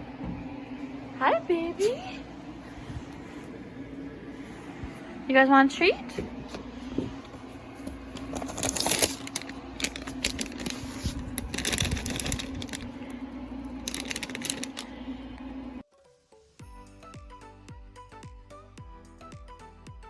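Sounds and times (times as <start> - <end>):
steady low hum: 0.0 - 15.8
rustling and crinkling: 6.1 - 15.0.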